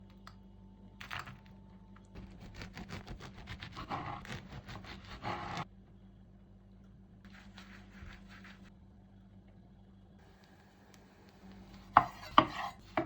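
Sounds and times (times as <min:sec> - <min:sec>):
scraping and rasping strokes: 0:11.9 - 0:13.0.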